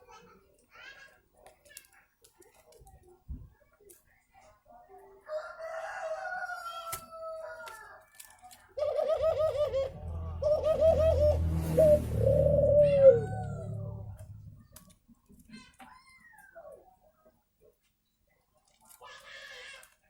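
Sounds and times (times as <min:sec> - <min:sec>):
bird calling: 0:08.8 - 0:14.1
low hum: 0:09.2 - 0:14.8.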